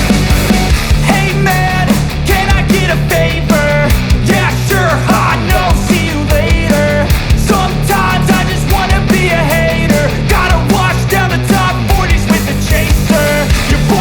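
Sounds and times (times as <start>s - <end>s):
loud rock music: 0.0s - 14.0s.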